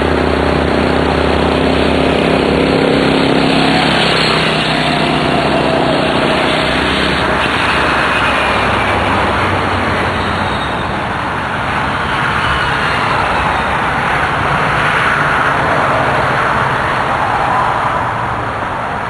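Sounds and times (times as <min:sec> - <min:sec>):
lawn mower engine running: 0:00.0 - 0:15.0
dense rushing noise: 0:00.0 - 0:19.0.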